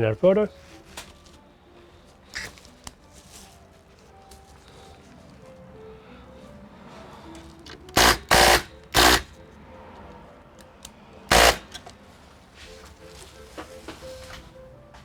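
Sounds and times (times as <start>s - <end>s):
electric screwdriver running: 7.7s - 9.4s, 11.3s - 11.9s.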